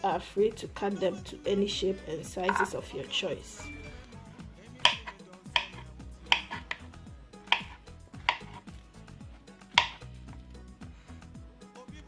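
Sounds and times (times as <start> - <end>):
knife knocking on cutting board: 2.5 - 2.8, 4.8 - 6.9, 7.5 - 8.7, 9.7 - 10.1.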